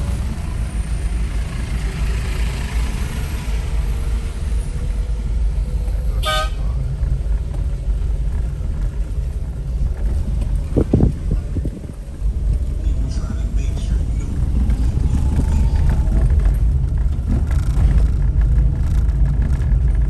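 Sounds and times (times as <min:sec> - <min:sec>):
car driving rumble: 0:00.0 - 0:20.0
car horn toot: 0:06.2 - 0:06.8.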